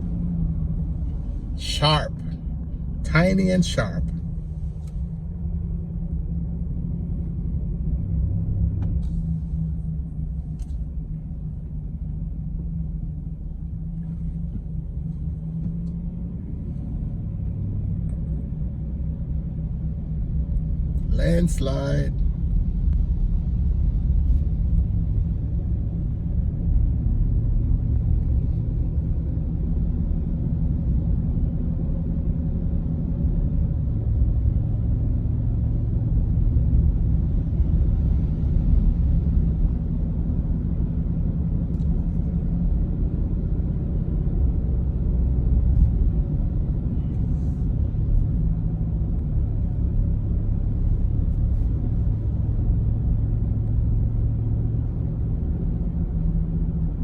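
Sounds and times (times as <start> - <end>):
vehicle engine and road rumble: 0.0 - 57.0.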